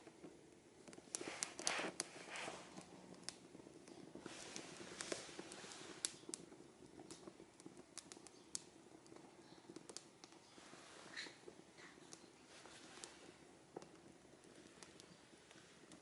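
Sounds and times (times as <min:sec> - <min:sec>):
burning leaves crackling and popping: 0:00.0 - 0:16.0.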